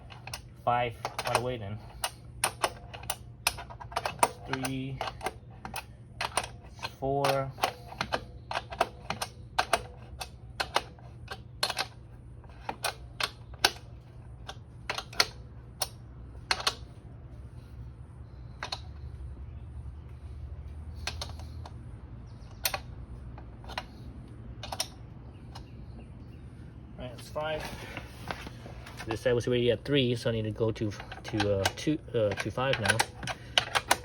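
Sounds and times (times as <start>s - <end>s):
faint low hum: 0.0s - 34.0s
hand tool clicking: 1.0s - 13.9s, 30.8s - 34.0s.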